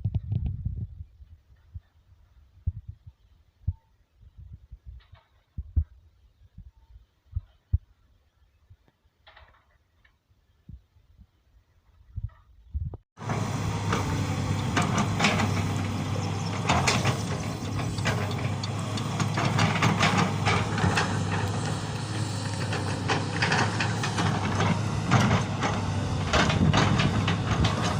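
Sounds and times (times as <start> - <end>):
excavator diesel engine running: 13.2 - 27.9
metallic clanks and rattles: 13.8 - 27.9.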